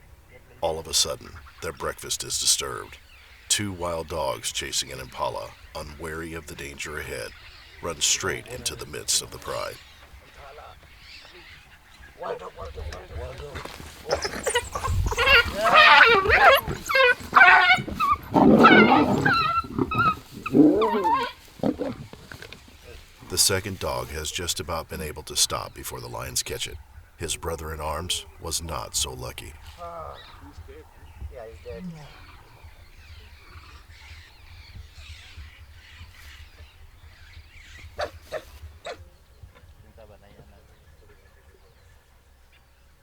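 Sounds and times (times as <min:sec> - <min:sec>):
animal chirping and squealing: 0:10.4 - 0:22.3
wild dog yelping and screaming: 0:12.1 - 0:22.5, 0:37.9 - 0:39.1
harsh growl: 0:18.3 - 0:22.1.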